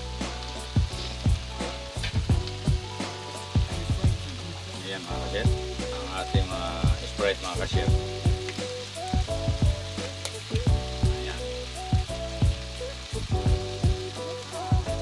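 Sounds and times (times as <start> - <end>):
background music with beat: 0.0 - 15.0
meat sizzling in a pan: 0.0 - 15.0.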